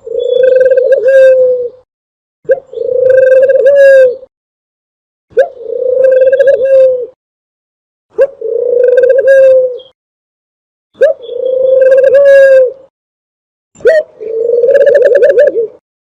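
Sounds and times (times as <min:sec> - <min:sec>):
dove cooing call: 0:00.0 - 0:01.9, 0:02.5 - 0:04.3, 0:05.3 - 0:07.2, 0:08.1 - 0:10.0, 0:11.0 - 0:12.9, 0:13.8 - 0:15.8.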